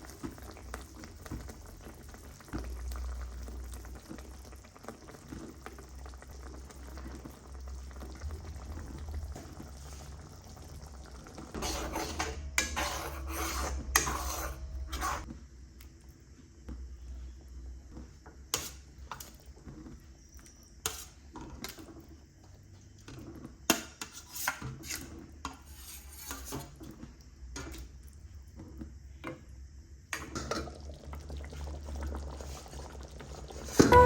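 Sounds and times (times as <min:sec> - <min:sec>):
utensils clinking against pots: 0:11.6 - 0:15.2.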